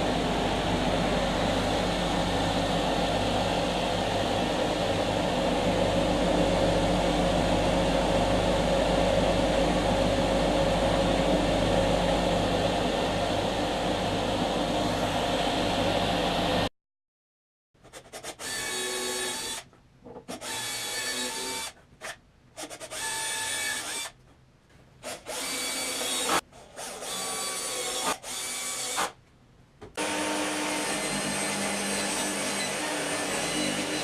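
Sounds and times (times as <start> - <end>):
power tool motor whine: 25.3 - 29.2, 30.0 - 34.0.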